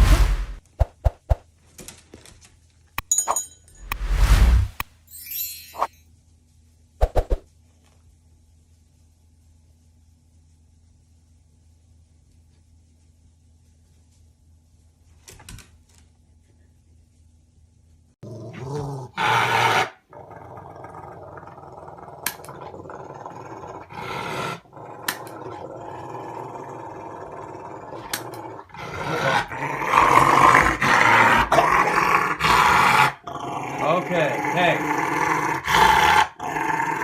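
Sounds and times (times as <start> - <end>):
dog growling: 18.2 - 37.0.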